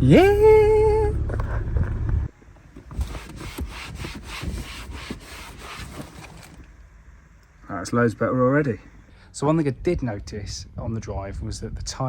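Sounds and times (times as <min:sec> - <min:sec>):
low car rumble: 0:00.0 - 0:02.8
cloth scrubbing dashboard: 0:02.8 - 0:06.7.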